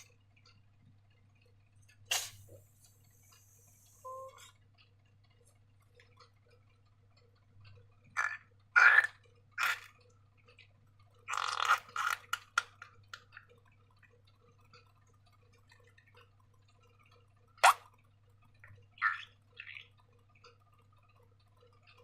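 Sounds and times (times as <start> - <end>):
faint low hum: 0.0 - 11.3.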